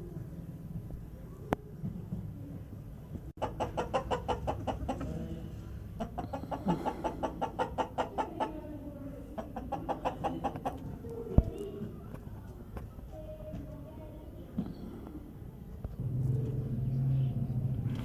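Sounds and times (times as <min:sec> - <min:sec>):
hen cackling: 0:03.4 - 0:05.4, 0:06.0 - 0:08.6, 0:09.3 - 0:10.8.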